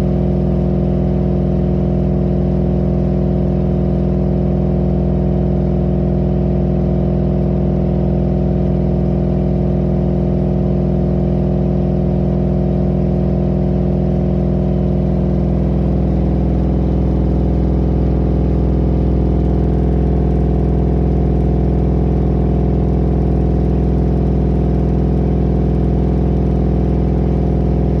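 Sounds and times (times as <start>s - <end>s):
washing machine spinning: 15.1s - 28.0s.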